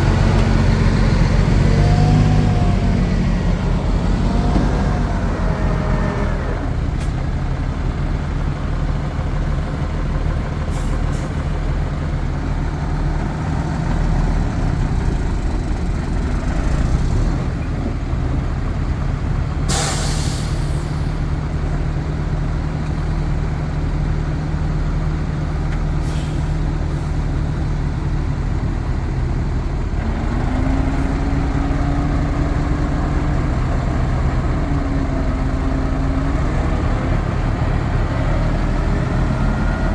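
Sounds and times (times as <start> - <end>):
diesel machinery running: 0.0 - 39.9
air brakes hiss: 19.7 - 21.3, 26.0 - 27.3.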